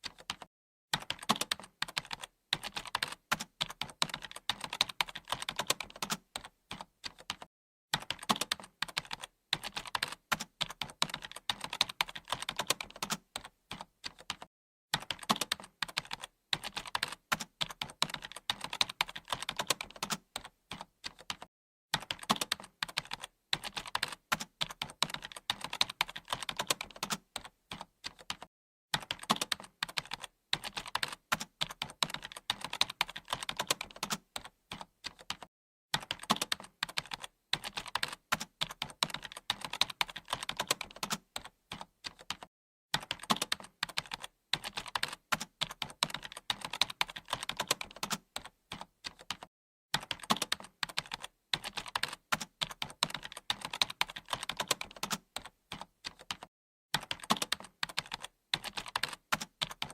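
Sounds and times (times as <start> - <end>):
computer keyboard typing: 0.0 - 59.9.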